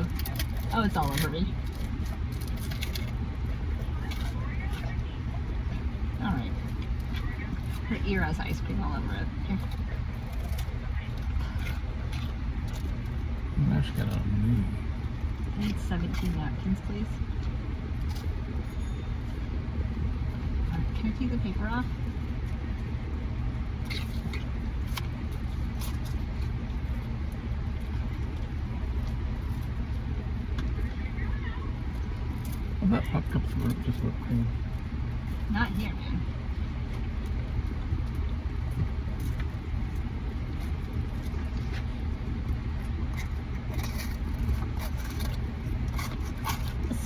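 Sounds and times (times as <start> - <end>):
car cabin rumble: 0.0 - 47.0.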